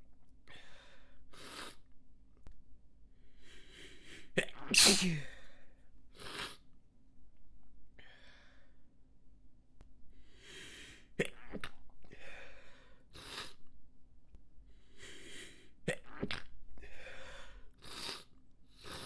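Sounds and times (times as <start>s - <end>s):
person stifling sneezes: 4.7s - 5.4s
breathy intakes: 4.8s - 5.2s.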